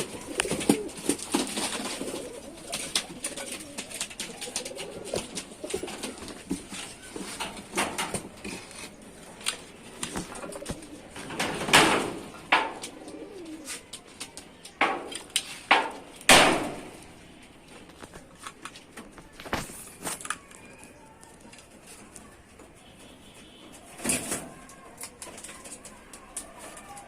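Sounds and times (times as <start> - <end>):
pigeons cooing: 0.0 - 14.0.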